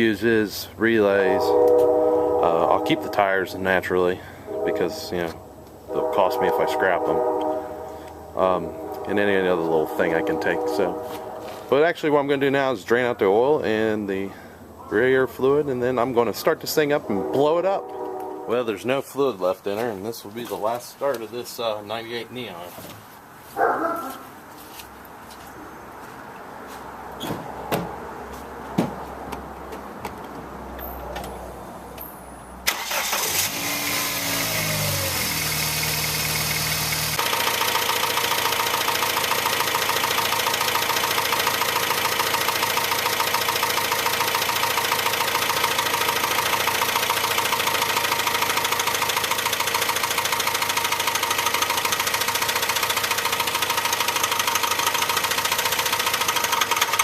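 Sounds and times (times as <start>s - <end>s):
car engine revving high: 33.3s - 37.2s.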